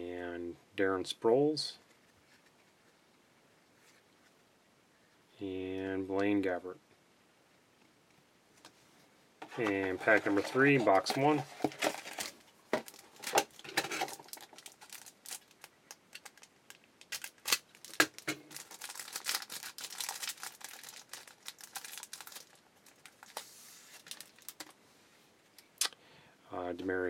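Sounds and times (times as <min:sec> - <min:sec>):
foil wrapper crinkling: 0:09.5 - 0:24.8.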